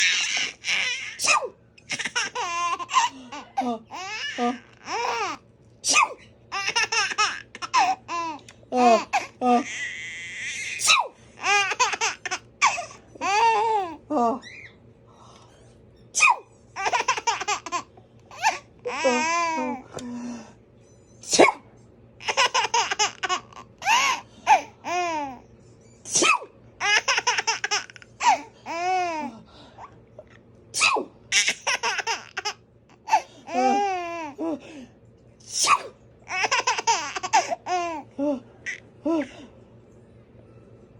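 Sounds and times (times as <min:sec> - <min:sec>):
baby laughing: 0:00.0 - 0:01.2, 0:01.8 - 0:05.4, 0:06.0 - 0:14.0, 0:16.2 - 0:19.8, 0:22.2 - 0:25.4, 0:26.8 - 0:29.2, 0:31.3 - 0:34.4, 0:36.3 - 0:38.0
adult fake sneezing: 0:01.2 - 0:01.6, 0:05.8 - 0:06.2, 0:10.8 - 0:11.2, 0:16.2 - 0:16.5, 0:21.2 - 0:21.7, 0:26.1 - 0:26.5, 0:30.7 - 0:31.2, 0:35.4 - 0:36.0.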